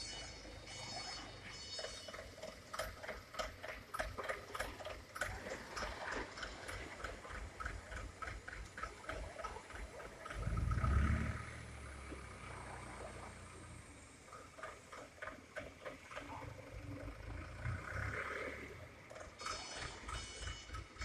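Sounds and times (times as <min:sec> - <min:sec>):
rhythmic ticking clatter: 0:00.4 - 0:10.7, 0:14.2 - 0:17.2.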